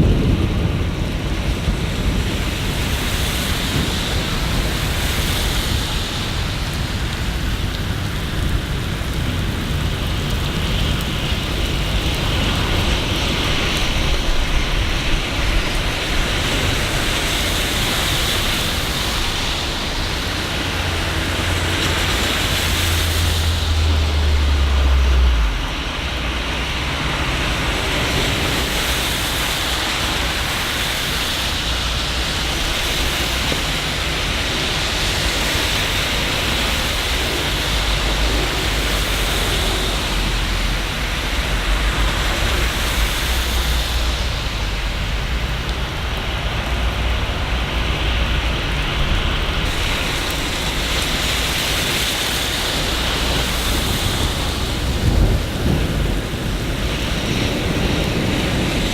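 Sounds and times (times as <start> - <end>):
steady rain hiss: 0.0 - 58.9
low rumble: 17.8 - 28.5.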